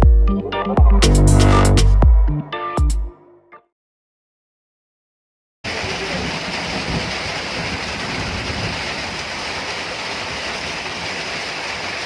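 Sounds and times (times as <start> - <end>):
flowing water rushing: 5.7 - 12.0.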